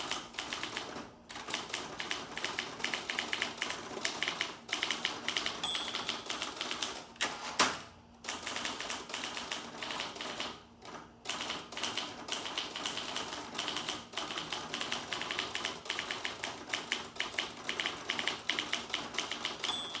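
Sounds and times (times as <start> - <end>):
typewriter clatter: 11.3 - 20.0.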